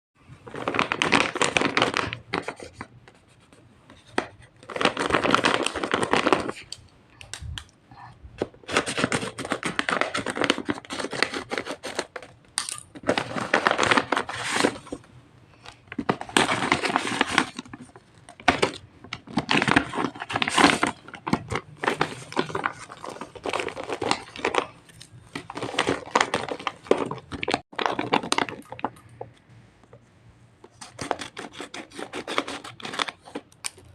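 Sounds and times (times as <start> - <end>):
paper and tape tearing and crinkling: 8.6 - 12.2, 16.0 - 28.7, 30.8 - 33.9.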